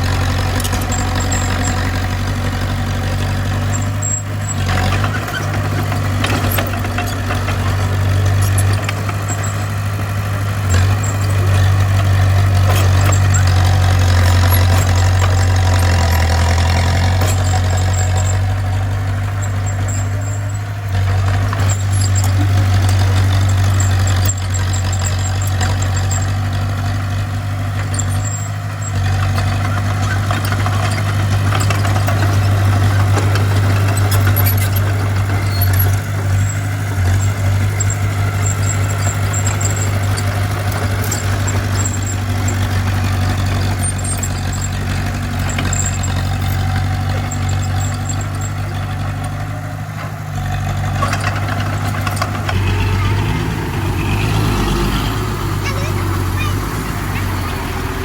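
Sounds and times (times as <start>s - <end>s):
bulldozer diesel engine: 0.0s - 58.0s.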